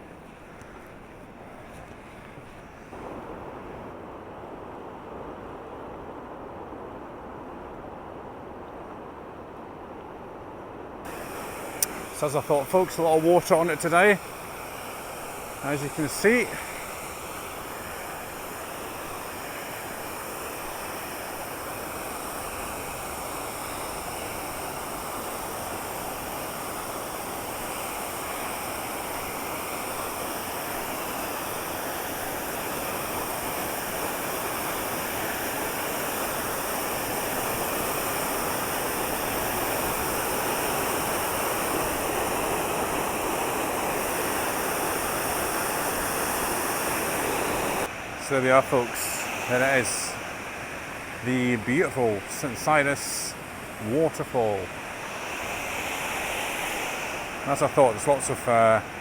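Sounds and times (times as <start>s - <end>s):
waterfall rushing: 11.1s - 59.0s.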